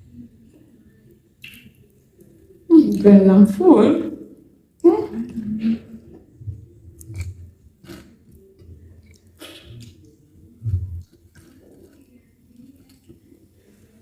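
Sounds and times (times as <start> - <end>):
chewing and mouth clicks: 6.5 - 13.4.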